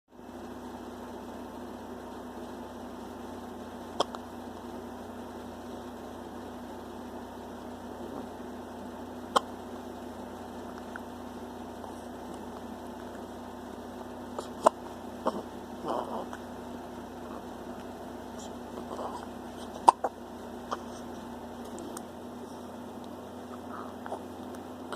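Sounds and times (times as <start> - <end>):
electrical hum: 0.1 - 24.9
baby hiccupping: 4.0 - 4.2, 14.3 - 16.5, 17.2 - 21.2.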